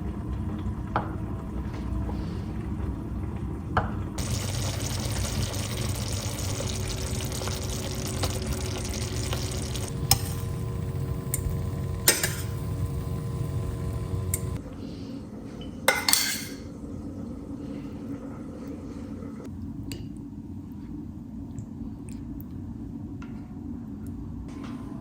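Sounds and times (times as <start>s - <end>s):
dishes clinking: 12.1s - 12.6s, 15.9s - 16.7s.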